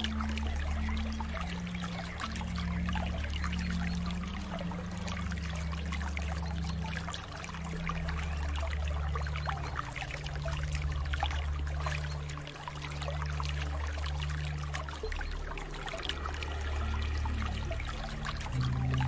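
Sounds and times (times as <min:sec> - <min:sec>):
steady low hum: 0:00.0 - 0:19.0
water trickling and splashing: 0:00.0 - 0:19.0.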